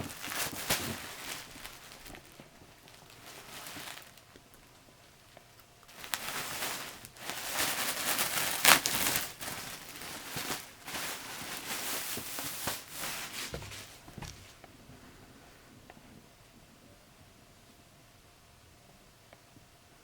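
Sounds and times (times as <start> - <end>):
sharp crackle: 0.0 - 4.8, 5.8 - 13.4
packaging rustling and crinkling: 0.0 - 14.6.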